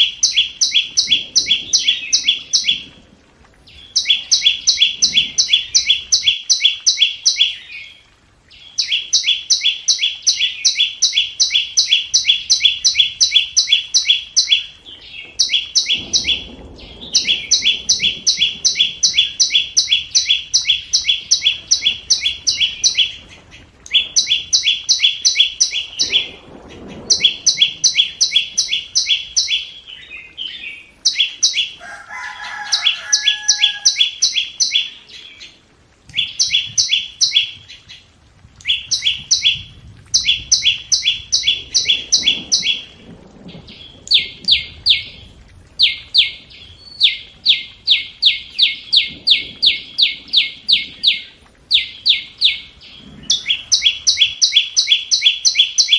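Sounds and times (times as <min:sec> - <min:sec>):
bird giving high ticking calls: 0:00.0 - 0:02.8, 0:03.8 - 0:07.9, 0:08.6 - 0:29.8, 0:30.4 - 0:38.0, 0:38.6 - 0:43.0, 0:45.8 - 0:55.9
lower whistled bird call: 0:00.0 - 0:02.9, 0:03.8 - 0:07.9, 0:08.7 - 0:14.8, 0:15.4 - 0:23.3, 0:23.9 - 0:35.0, 0:38.6 - 0:43.0, 0:45.8 - 0:55.9.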